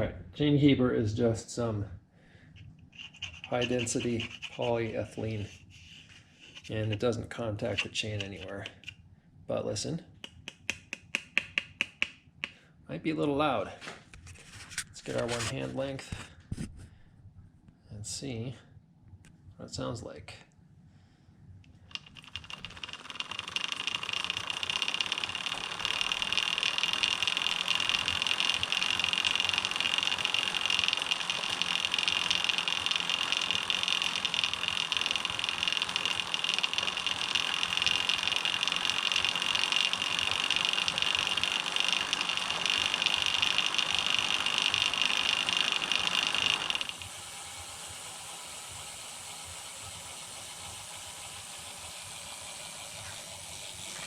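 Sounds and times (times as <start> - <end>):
quieter steady noise: 0.0 - 54.0
bicycle chain over pulley: 21.9 - 54.0.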